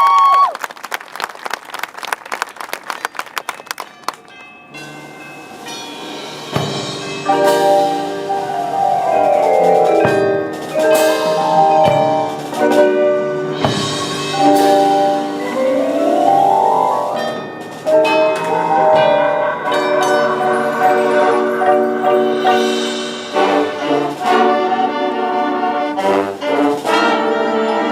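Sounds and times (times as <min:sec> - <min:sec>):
mallet instruments ringing: 0:03.0 - 0:24.9
percussion hits: 0:03.5 - 0:27.9
marching band playing chords: 0:04.8 - 0:27.9.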